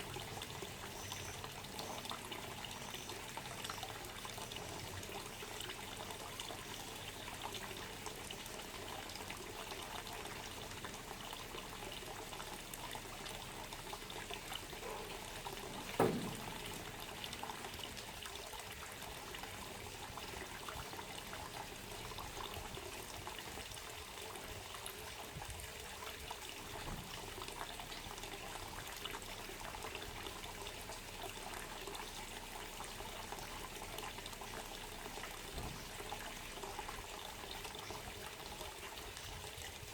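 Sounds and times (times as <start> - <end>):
water trickling: 0.0 - 39.9
sharp knock: 15.8 - 17.1.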